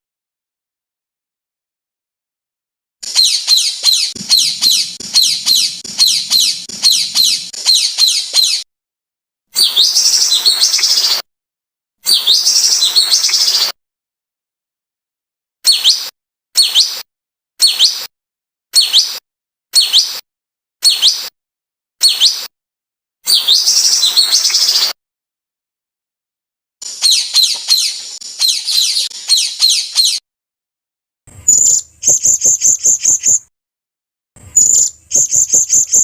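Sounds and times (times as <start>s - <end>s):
songbird calls: 3.0s - 8.6s, 9.6s - 11.2s, 12.1s - 13.7s, 23.3s - 24.9s, 26.8s - 30.2s, 31.5s - 33.4s, 34.6s - 36.0s.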